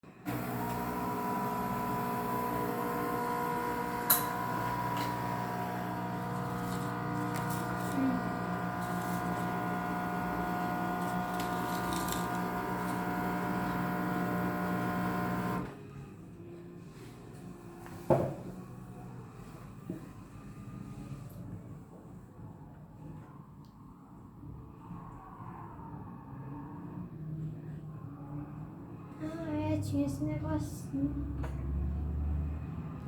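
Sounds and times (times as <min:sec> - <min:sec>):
coffee machine pump buzzing: 0:00.2 - 0:15.8.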